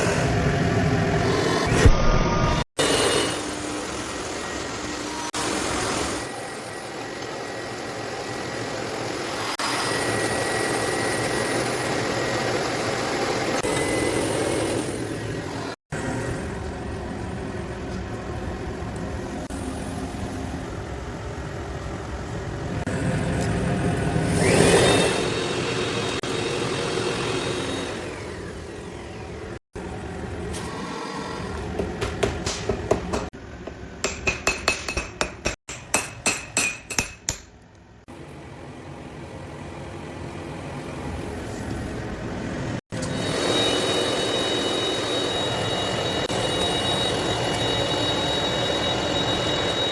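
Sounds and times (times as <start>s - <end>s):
hammer ringing on anvil: 34.0s - 37.5s.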